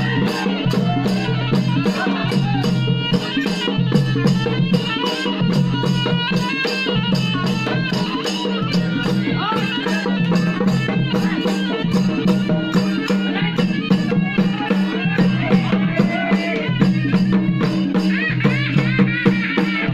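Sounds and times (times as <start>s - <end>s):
folk music with rattling percussion: 0.0s - 19.9s.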